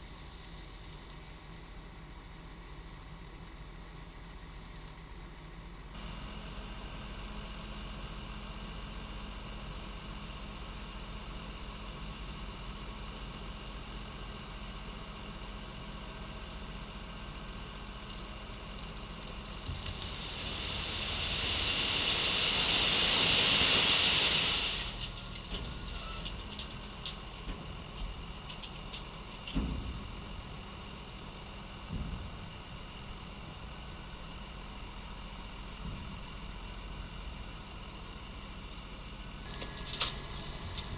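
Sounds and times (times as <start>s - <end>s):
diesel engine running: 0.0s - 40.9s
loud hissing rush: 19.8s - 25.0s.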